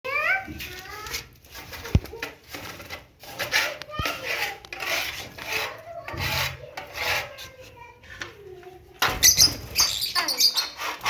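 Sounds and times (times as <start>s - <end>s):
lovebirds chattering: 9.1s - 11.0s.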